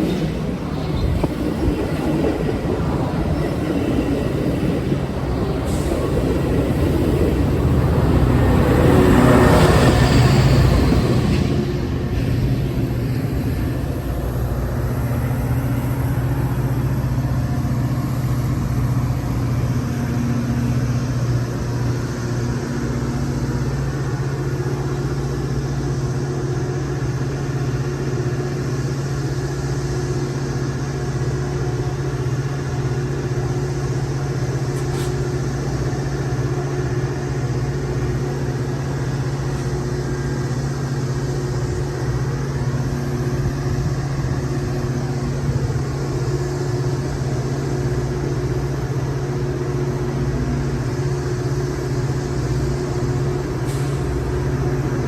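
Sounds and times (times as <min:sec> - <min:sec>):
vehicle engine humming: 0:33.2 - 0:55.0.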